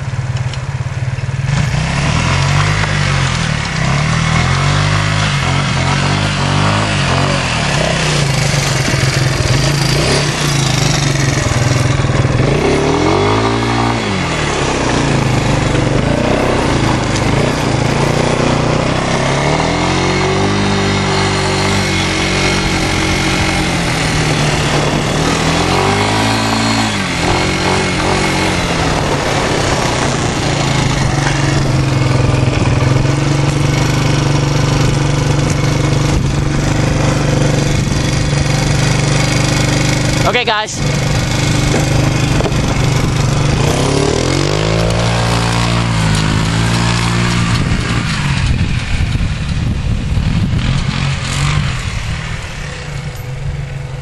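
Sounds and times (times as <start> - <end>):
atv engine revving: 0.0 - 54.0
steady rushing noise: 1.4 - 54.0.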